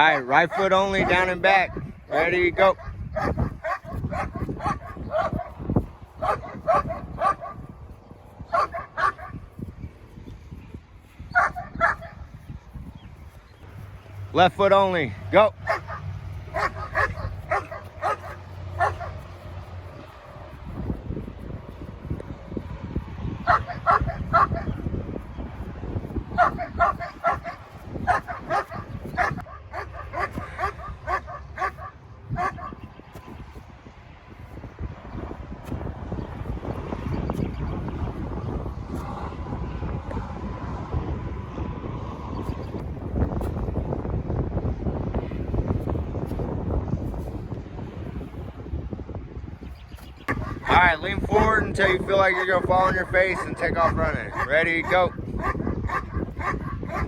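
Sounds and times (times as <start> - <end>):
dog barking and yapping: 0.0 - 2.0, 2.8 - 5.6, 6.2 - 7.7, 8.5 - 9.4, 11.3 - 12.2, 15.6 - 19.4, 23.4 - 24.9, 26.3 - 32.8, 50.3 - 50.8, 53.4 - 57.0
steady low rumble: 0.0 - 57.0.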